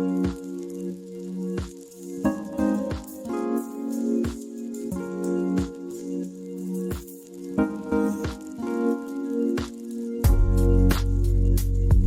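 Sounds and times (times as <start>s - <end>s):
thumping kick drum: 10.3s - 10.6s.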